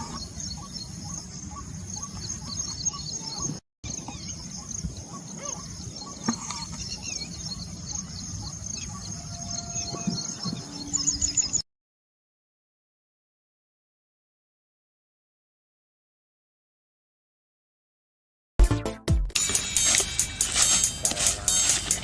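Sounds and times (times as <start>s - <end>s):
birds chirping: 0.0s - 11.7s, 19.4s - 22.0s
insects shrilling: 19.4s - 22.0s.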